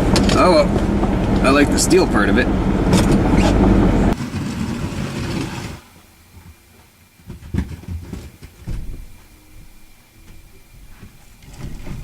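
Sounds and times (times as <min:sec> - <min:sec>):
vehicle rumbling loudly: 0:00.0 - 0:06.1
knocks and thumps: 0:07.2 - 0:09.2.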